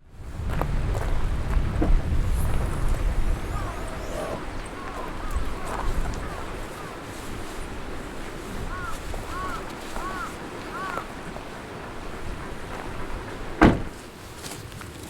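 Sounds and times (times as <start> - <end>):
wind noise on microphone: 0.0 - 14.1
loud thump: 13.6 - 14.0.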